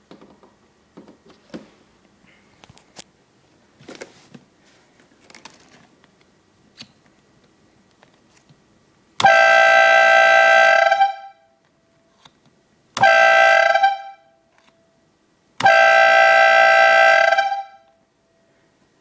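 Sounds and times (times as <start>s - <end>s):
air horn blasts: 9.2s - 11.6s, 13.0s - 14.5s, 15.6s - 18.0s.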